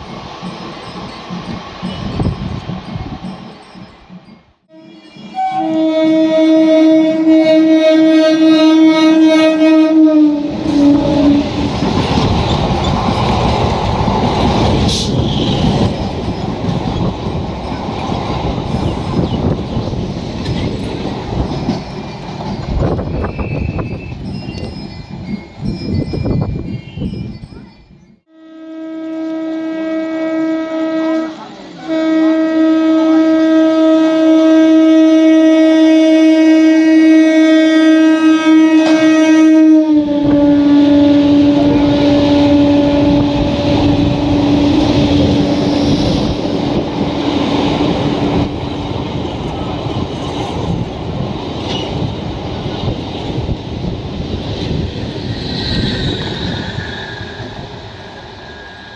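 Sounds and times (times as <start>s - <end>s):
train wheels rumbling on rails: 0.0s - 28.2s, 37.1s - 58.9s
train horn: 4.7s - 11.7s, 28.3s - 46.5s.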